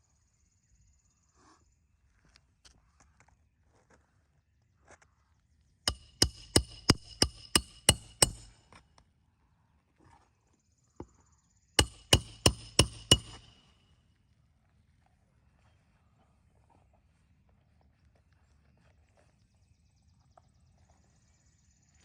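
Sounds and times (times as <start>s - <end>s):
hatchet hammering nails: 5.9s - 8.6s, 11.8s - 13.7s.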